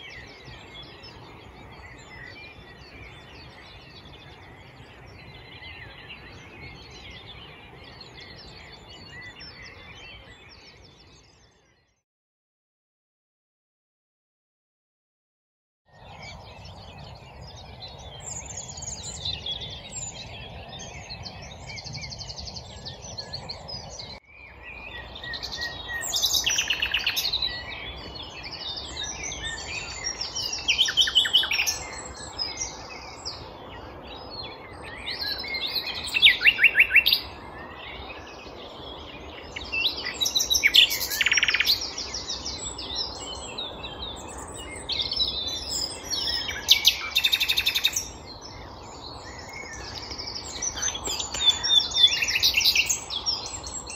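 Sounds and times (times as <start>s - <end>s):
nightingale singing: 16.0s - 53.9s.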